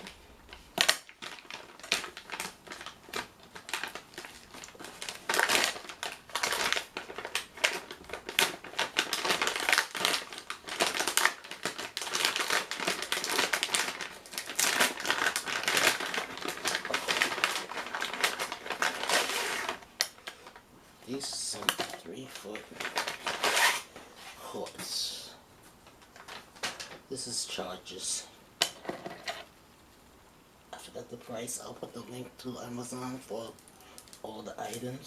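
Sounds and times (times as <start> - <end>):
packaging crinkling and rustling: 0.0 - 25.0, 25.6 - 29.5.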